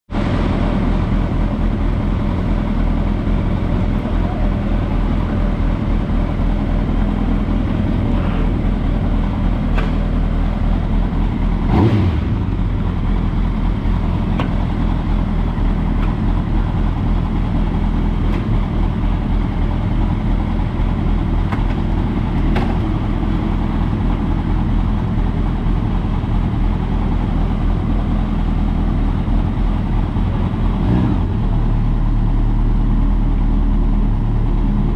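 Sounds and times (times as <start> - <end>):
motorcycle engine running: 0.1 - 34.9.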